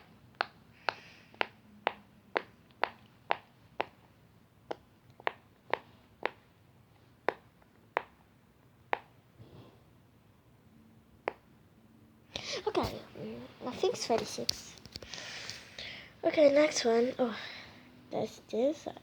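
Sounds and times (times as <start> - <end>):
pop-it toy bubbles popping: 0.0 - 6.4.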